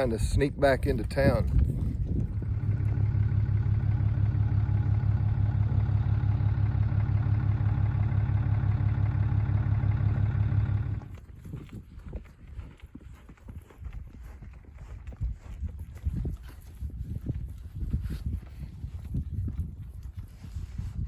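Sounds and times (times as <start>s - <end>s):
vehicle engine running: 0.0s - 11.4s.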